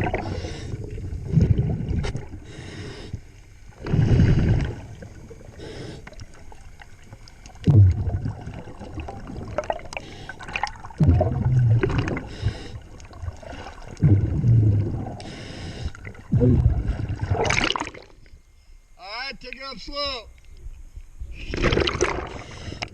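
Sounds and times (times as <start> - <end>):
gurgling exhaled bubbles: 0.0 - 2.6, 3.7 - 18.2, 21.3 - 22.9
regulator inhale hisses: 0.2 - 1.0, 2.2 - 4.5, 5.5 - 6.2, 10.0 - 10.5, 12.2 - 13.0, 15.2 - 16.1, 22.3 - 22.9
small clicks and crackles: 6.0 - 7.7.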